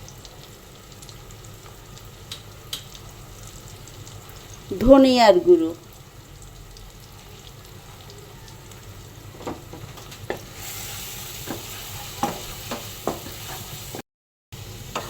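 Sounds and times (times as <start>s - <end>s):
spices sizzling in a pan: 0.0s - 14.0s, 14.6s - 15.0s
spatula knocking against pan: 11.5s - 13.4s.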